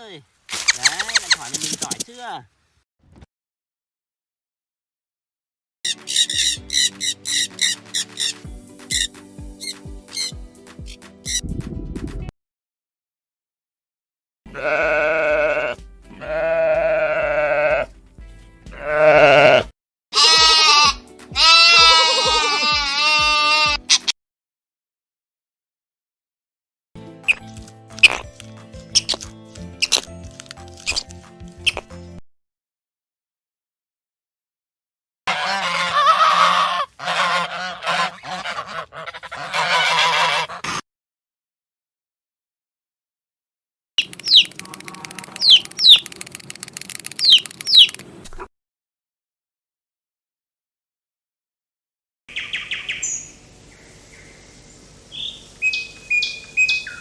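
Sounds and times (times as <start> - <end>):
sheep or goat bleating: 14.5 - 18.0, 18.6 - 24.0, 44.7 - 45.5
flock of waterfowl calling: 35.3 - 40.7.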